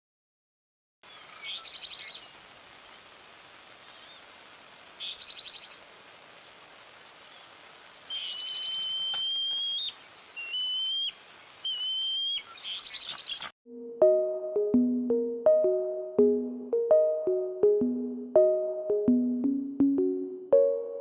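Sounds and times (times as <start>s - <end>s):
songbird singing: 1.0s - 3.0s, 3.8s - 4.3s, 5.0s - 6.6s, 7.2s - 13.5s.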